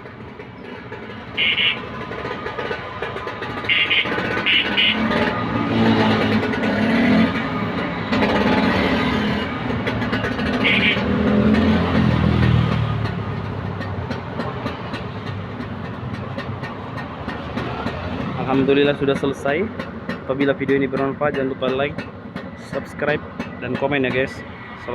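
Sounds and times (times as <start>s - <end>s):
scooter engine revving: 0.0s - 24.1s
short horn beeps: 1.4s - 1.9s, 3.7s - 5.1s, 10.6s - 11.1s.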